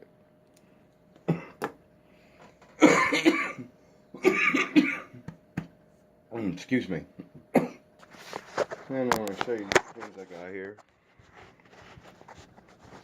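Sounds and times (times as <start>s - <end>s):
man coughing: 1.2s - 1.6s, 2.8s - 5.3s, 7.5s - 7.8s.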